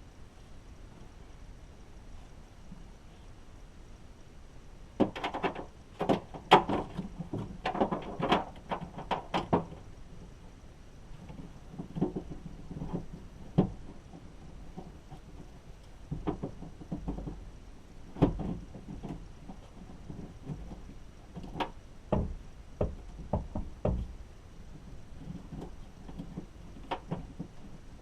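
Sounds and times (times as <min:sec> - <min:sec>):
hard parts knocking and clicking: 0:05.0 - 0:09.8.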